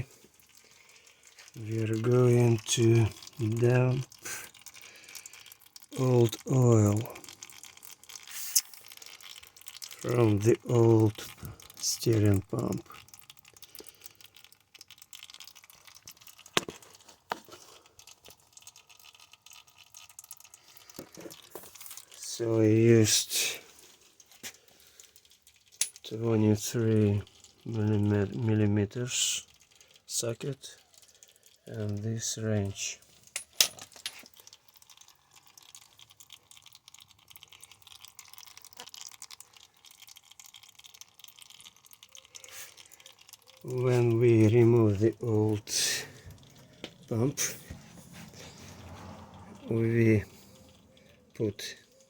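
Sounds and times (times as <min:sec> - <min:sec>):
light rustling and crackling: 0:20.2 - 0:22.4.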